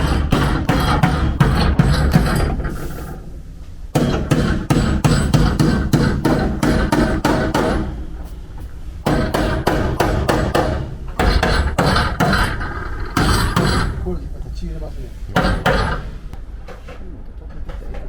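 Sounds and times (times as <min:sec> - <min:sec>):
hammer striking steel panel: 0:00.0 - 0:03.0, 0:03.9 - 0:08.1, 0:09.0 - 0:14.2, 0:15.3 - 0:16.2.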